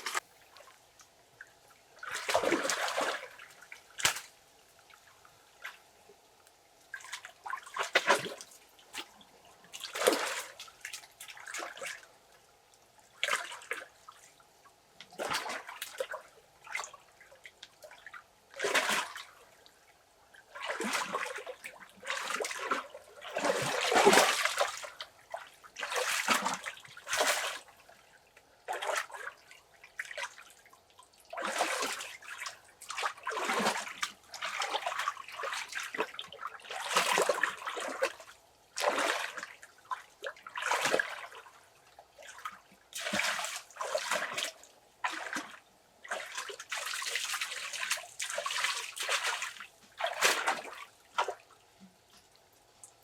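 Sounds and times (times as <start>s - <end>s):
water splashing and pouring: 43.0s - 51.4s.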